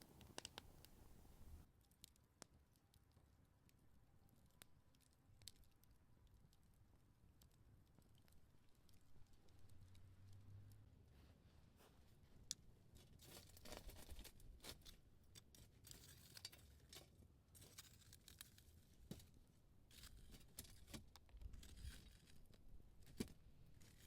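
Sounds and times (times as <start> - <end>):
wood fire crackling: 0.0 - 11.2.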